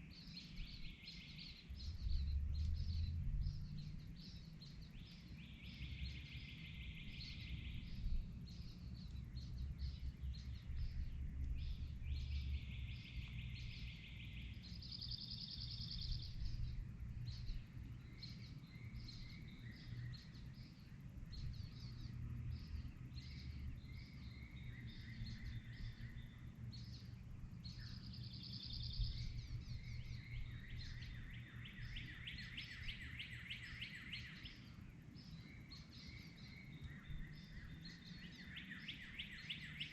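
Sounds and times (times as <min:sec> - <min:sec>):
songbirds trilling: 0:00.0 - 0:39.9
steady low rumble: 0:01.5 - 0:14.7, 0:15.6 - 0:28.1.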